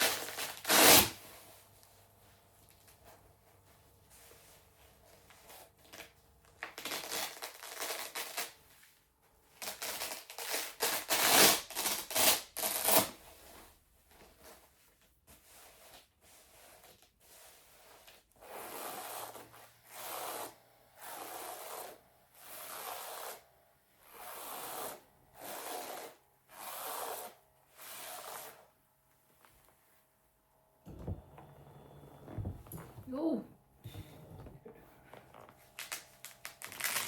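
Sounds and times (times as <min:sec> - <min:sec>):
low motor hum: 0:30.8 - 0:35.3.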